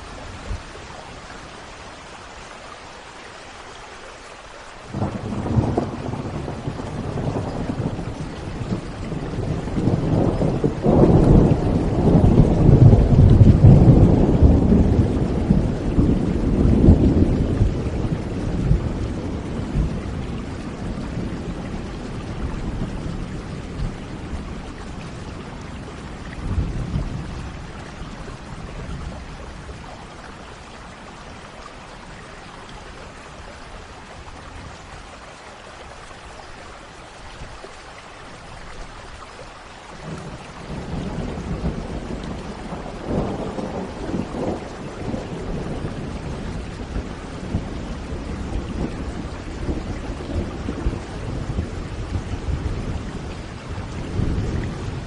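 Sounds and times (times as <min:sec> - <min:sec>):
rain hissing: 0:00.0 - 0:55.0
rolling thunder: 0:04.9 - 0:30.2, 0:40.0 - 0:55.0.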